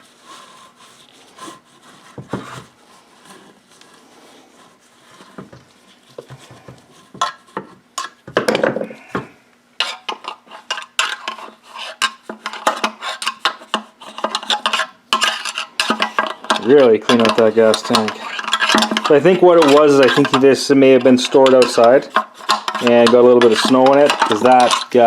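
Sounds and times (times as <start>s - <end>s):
plastic and metal rattling: 14.2s - 25.0s.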